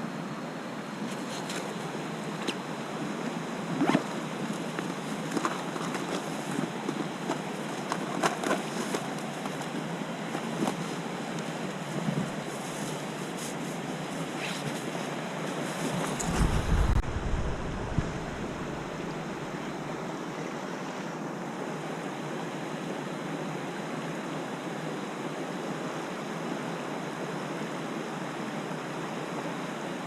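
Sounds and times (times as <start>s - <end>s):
stream water rushing: 0.0s - 30.0s
low rumble on microphone: 16.1s - 19.9s.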